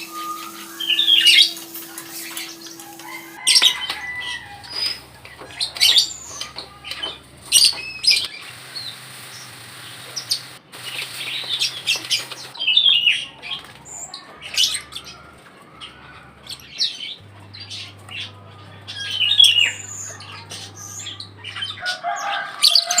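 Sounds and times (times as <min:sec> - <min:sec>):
birds chirping and squawking: 0:00.0 - 0:23.0.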